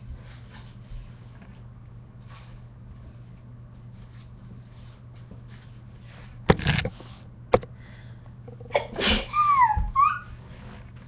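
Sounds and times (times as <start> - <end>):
rustling and handling noises: 0.1 - 7.4.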